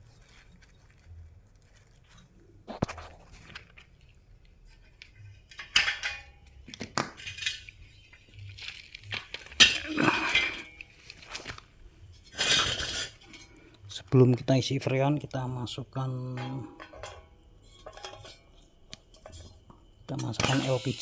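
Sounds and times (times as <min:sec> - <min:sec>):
metal tools clinking and rattling: 0:05.2 - 0:11.6, 0:16.1 - 0:21.0.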